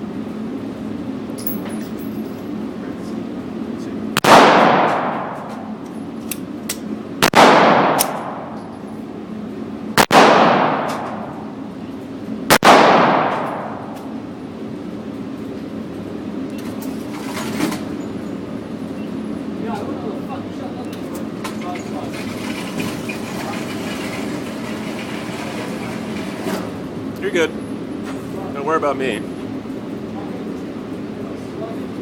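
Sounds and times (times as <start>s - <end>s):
pistol shots with echo: 4.2s - 5.7s, 7.2s - 8.6s, 10.0s - 11.5s, 12.5s - 14.0s.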